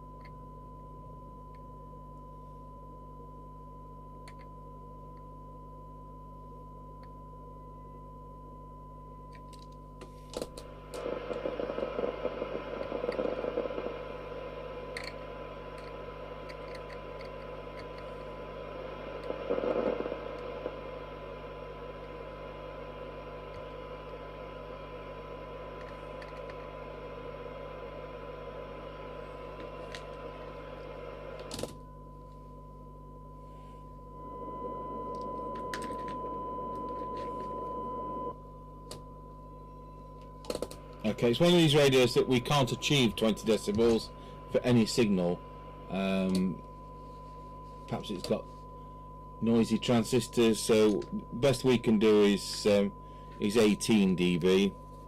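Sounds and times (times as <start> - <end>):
receiver hiss: 9.5 - 32.5, 33.3 - 39.4, 40.1 - 55.0
steady test tone: 10.6 - 55.0
clicks: 14.9 - 18.3, 35.1 - 37.6.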